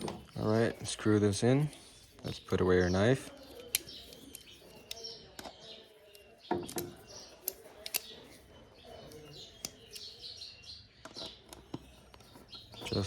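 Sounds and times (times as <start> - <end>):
faint birds chirping: 0.0 - 13.0
screwdriver and small tools clicking: 3.3 - 8.4.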